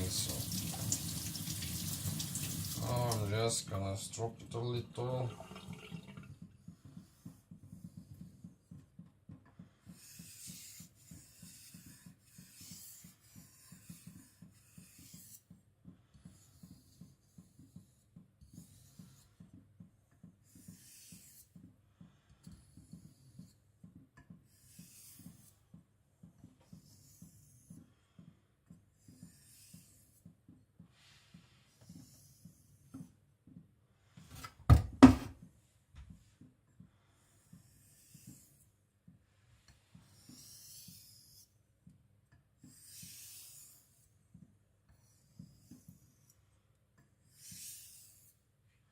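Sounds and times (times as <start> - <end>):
blade rubbing on strop: 9.9 - 15.6, 20.5 - 21.6, 24.5 - 25.7, 37.5 - 38.7, 40.0 - 41.6, 42.6 - 46.4, 47.3 - 48.5.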